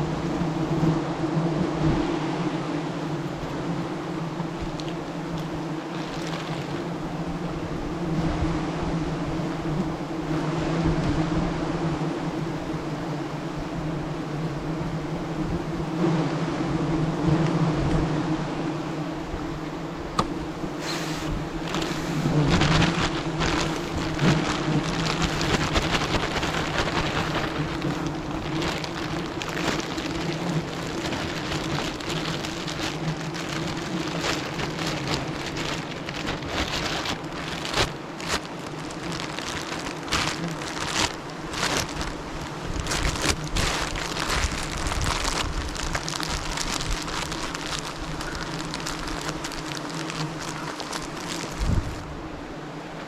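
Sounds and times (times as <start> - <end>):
crackling and rustling: 0.0 - 8.4, 19.6 - 52.2
bees buzzing: 0.0 - 53.0.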